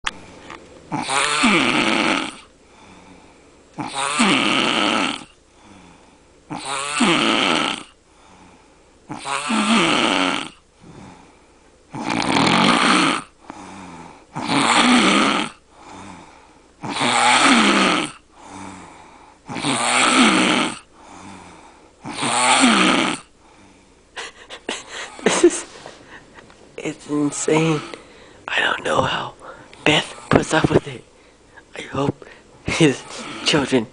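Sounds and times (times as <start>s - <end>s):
man snoring loudly: 0.9s - 2.5s, 3.8s - 5.9s, 6.5s - 8.5s, 9.1s - 11.1s, 11.9s - 23.3s
quiet breathing: 2.6s - 3.7s, 5.3s - 6.5s, 7.9s - 9.1s, 10.6s - 11.9s, 13.4s - 14.4s, 15.6s - 16.8s, 18.2s - 19.5s, 20.8s - 22.0s, 23.3s - 24.2s, 27.1s - 30.4s, 31.1s - 33.7s.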